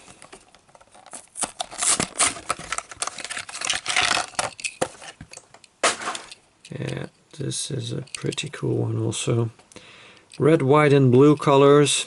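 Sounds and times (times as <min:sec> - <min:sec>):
plastic packaging crinkling: 0:00.0 - 0:06.4.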